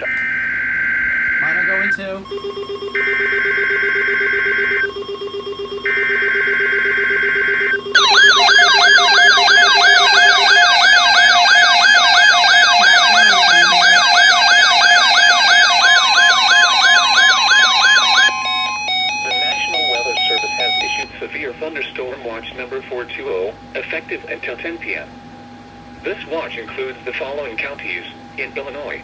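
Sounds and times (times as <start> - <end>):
siren-like alert tone: 0.0 - 21.1
buzzing data burst: 8.0 - 21.1.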